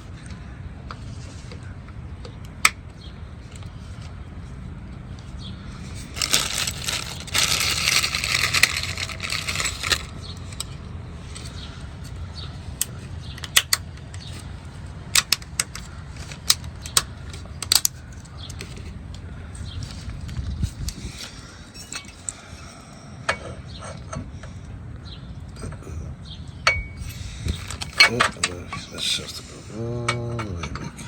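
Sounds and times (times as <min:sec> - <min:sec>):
scraping and rustling: 0:03.4 - 0:12.8
tools clinking metallically: 0:06.2 - 0:10.8, 0:26.6 - 0:31.0.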